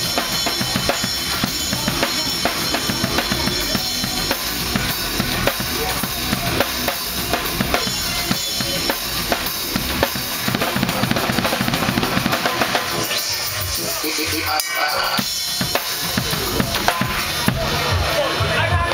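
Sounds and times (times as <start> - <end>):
bass drum: 0.0 - 14.5
cymbals: 0.0 - 18.9
snare drum: 5.4 - 13.5.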